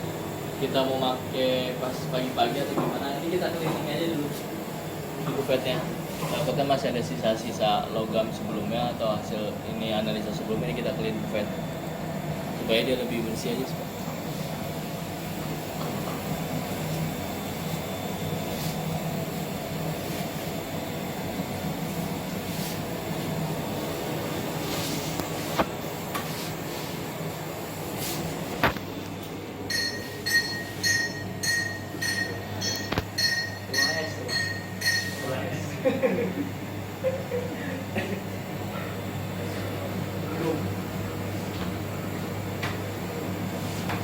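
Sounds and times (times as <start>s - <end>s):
short repeated beeps: 29.7s - 35.3s.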